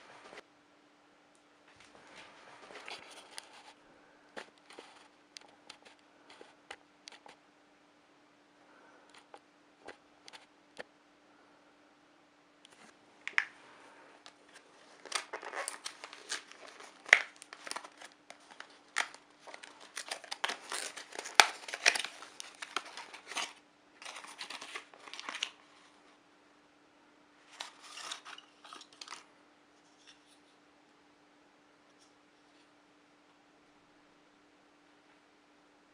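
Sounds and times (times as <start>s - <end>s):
plastic packaging crinkling: 12.7s - 26.0s, 27.5s - 29.3s.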